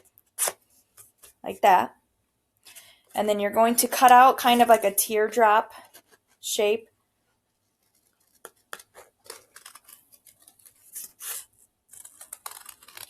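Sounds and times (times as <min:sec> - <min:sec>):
scissors snipping paper: 0:07.8 - 0:13.0.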